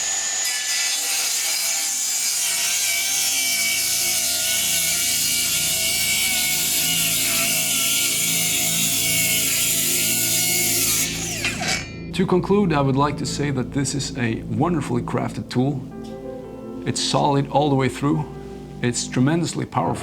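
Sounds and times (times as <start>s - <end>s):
circular saw cutting wood: 0.0s - 11.9s.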